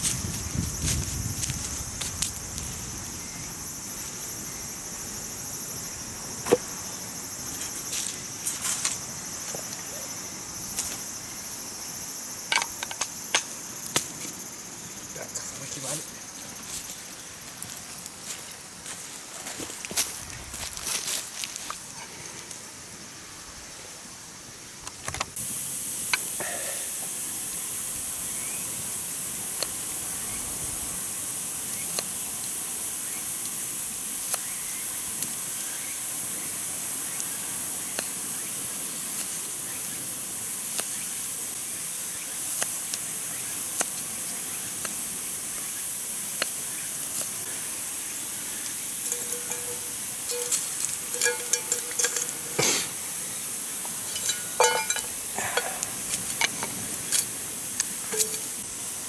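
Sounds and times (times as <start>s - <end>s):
food sizzling in a frying pan: 25.3s - 59.0s.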